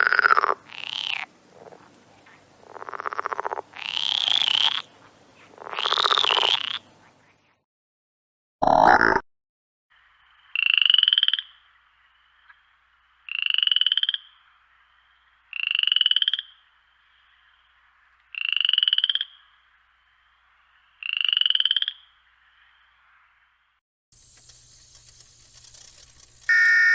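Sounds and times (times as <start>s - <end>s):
frog croaking: 0.0s - 1.8s, 2.7s - 4.9s, 5.6s - 6.8s, 13.3s - 14.4s, 15.5s - 16.6s, 18.3s - 19.5s, 21.0s - 22.2s
faint steady hiss: 11.4s - 13.3s, 22.1s - 26.9s.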